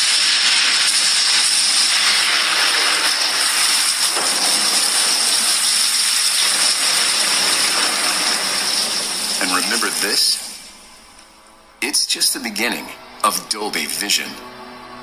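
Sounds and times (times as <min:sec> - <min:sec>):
water rushing: 0:00.0 - 0:10.9.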